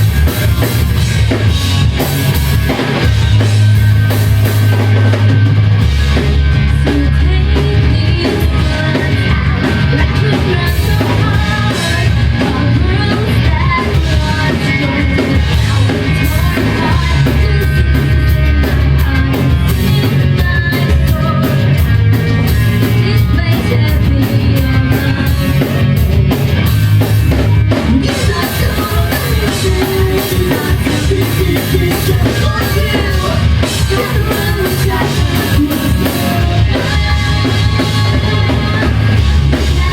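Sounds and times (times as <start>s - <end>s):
drum kit beat: 0.0s - 39.9s
live rock band playing: 0.0s - 39.9s.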